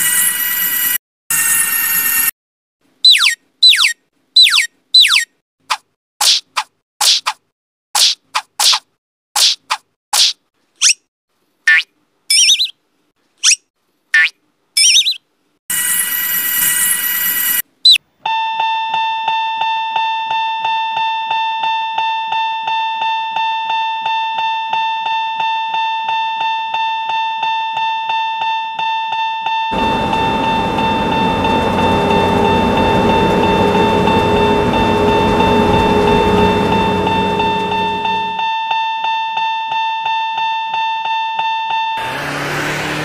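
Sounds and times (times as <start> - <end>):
railroad crossing electronic bell: 15.7 - 17.6, 18.3 - 41.9
steady rushing noise: 29.8 - 38.4.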